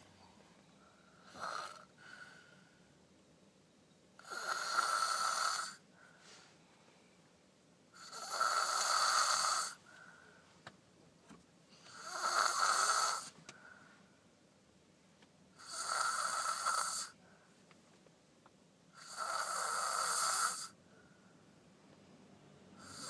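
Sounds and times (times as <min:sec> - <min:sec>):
faint breaths: 0:00.0 - 0:03.1, 0:05.7 - 0:07.4, 0:09.6 - 0:10.7, 0:13.1 - 0:14.4, 0:17.0 - 0:17.8, 0:20.6 - 0:21.7
child snoring loudly: 0:01.2 - 0:01.9, 0:04.2 - 0:05.8, 0:08.0 - 0:09.8, 0:11.9 - 0:13.3, 0:15.6 - 0:17.2, 0:19.0 - 0:20.8, 0:22.8 - 0:23.0.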